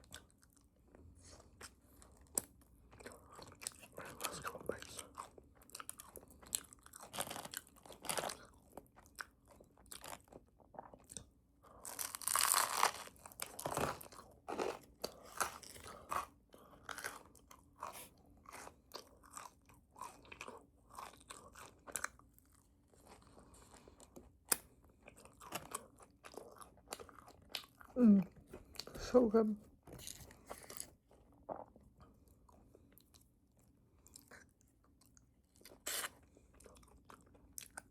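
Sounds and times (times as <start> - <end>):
crunchy chewing: 1.3 - 27.9.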